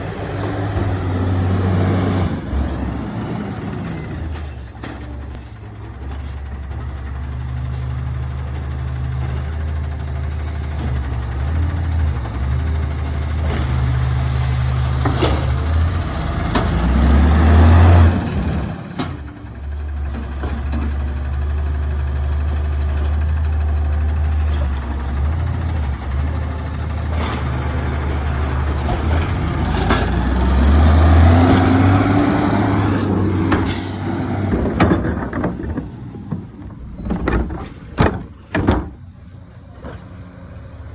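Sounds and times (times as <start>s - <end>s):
garbage truck engine running: 0.0s - 4.5s, 5.5s - 40.9s
air brake hissing: 33.6s - 34.2s.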